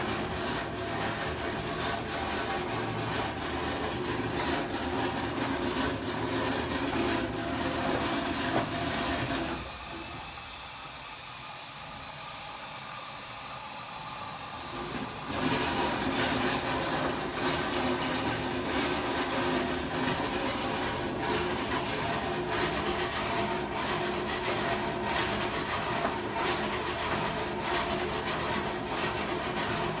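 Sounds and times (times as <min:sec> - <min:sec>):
washing machine rattling: 0:00.0 - 0:10.4, 0:14.5 - 0:23.0
washing machine hiss: 0:07.5 - 0:22.0.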